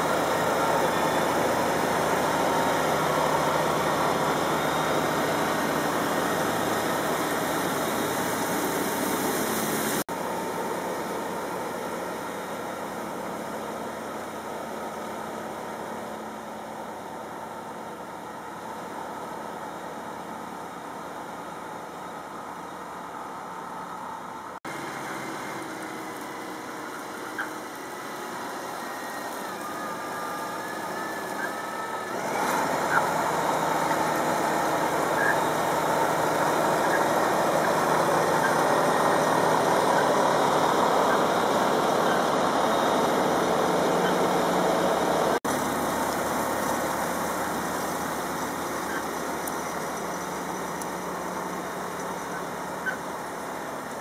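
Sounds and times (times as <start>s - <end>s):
tractor diesel engine under load: 0.0s - 54.0s.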